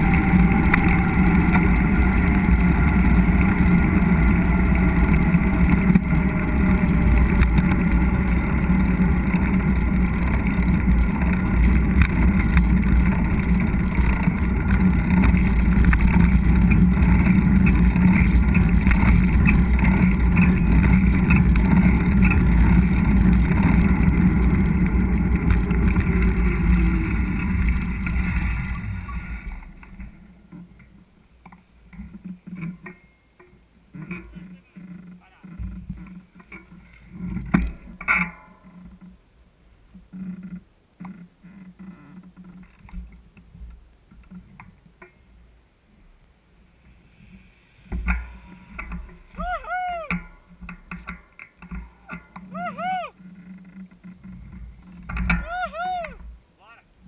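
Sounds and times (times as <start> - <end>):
wind buffeting microphone: 0.0 - 29.8
faint falling tone: 0.0 - 30.6, 48.2 - 50.3
bike tyres rolling: 0.0 - 56.6.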